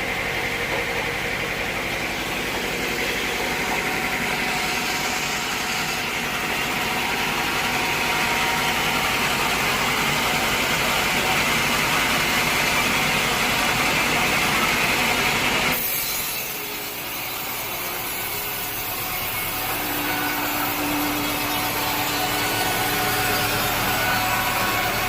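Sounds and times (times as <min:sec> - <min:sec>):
mill machinery running: 0:00.0 - 0:25.0
power saw cutting wood: 0:00.0 - 0:25.0.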